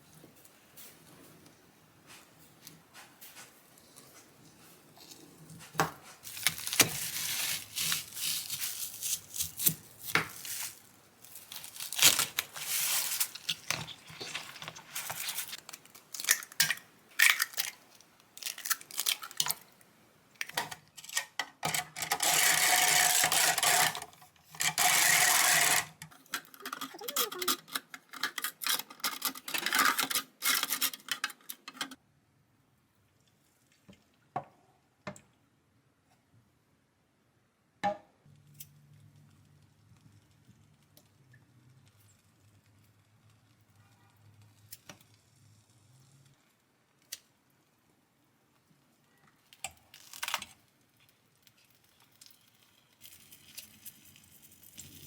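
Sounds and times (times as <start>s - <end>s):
packaging rustling and tearing: 6.2s - 19.6s, 49.9s - 50.6s.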